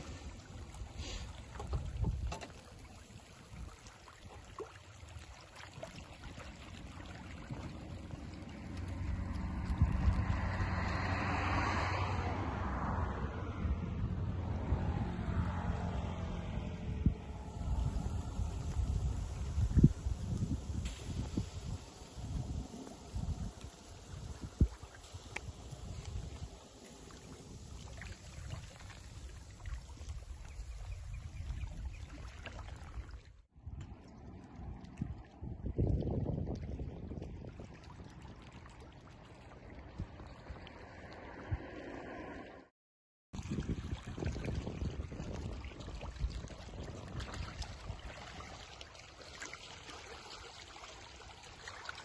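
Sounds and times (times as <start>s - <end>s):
wind buffeting microphone: 1.6s - 2.4s, 7.0s - 26.6s, 33.7s - 38.4s, 43.4s - 48.7s
low rumbling: 7.2s - 27.5s.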